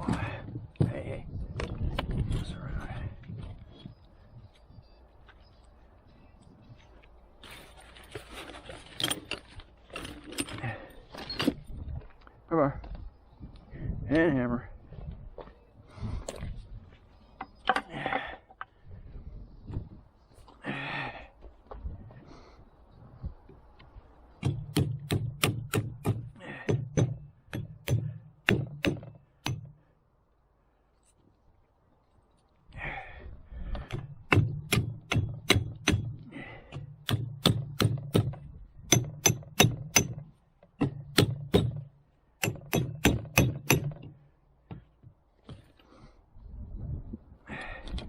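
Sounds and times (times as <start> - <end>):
hammer blows on a car: 24.4 - 29.8, 34.0 - 44.1.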